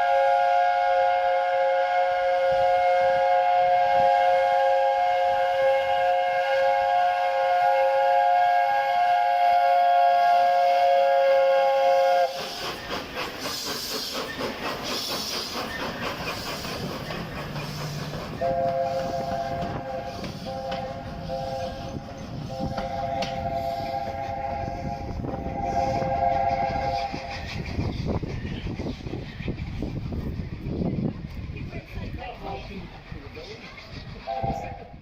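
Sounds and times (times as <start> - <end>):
train horn chord: 0.0 - 12.3, 18.4 - 27.0
train wheels clattering on rails: 11.9 - 34.8.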